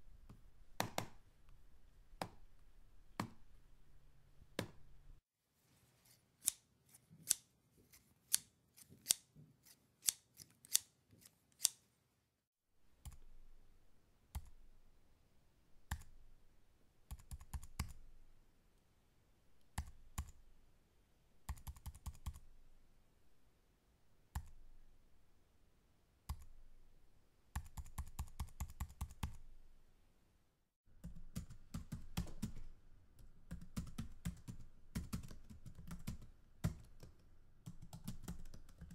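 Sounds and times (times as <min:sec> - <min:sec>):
scissors snipping: 0:06.4 - 0:11.8
typing on computer keyboard: 0:17.1 - 0:18.0, 0:21.5 - 0:22.4, 0:31.0 - 0:38.9.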